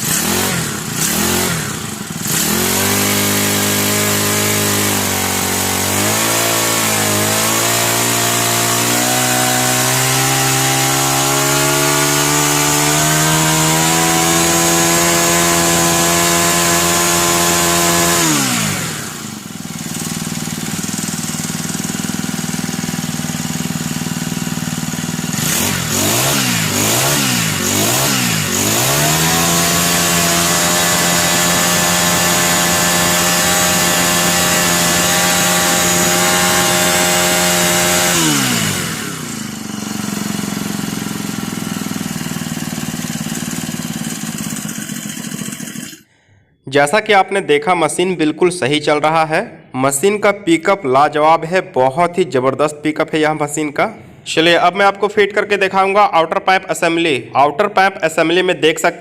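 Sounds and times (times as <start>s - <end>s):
brush cutter engine revving: 0.0s - 46.3s.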